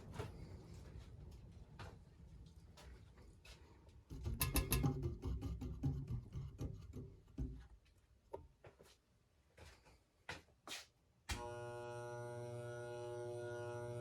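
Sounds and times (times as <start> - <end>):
clicks and knocks: 4.1 - 7.8
ceiling fan motor buzzing: 11.3 - 14.0.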